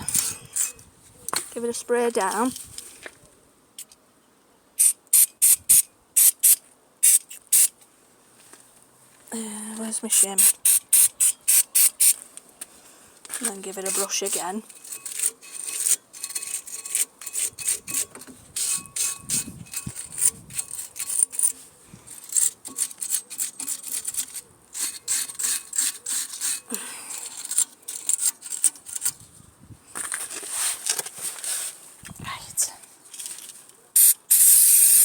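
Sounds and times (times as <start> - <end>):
stiff brush scrubbing metal: 13.4 - 29.0
steady hiss: 34.0 - 35.0.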